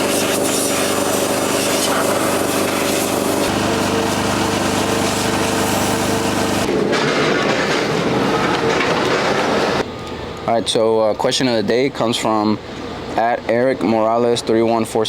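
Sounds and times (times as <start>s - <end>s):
small engine machine running: 0.0s - 6.9s.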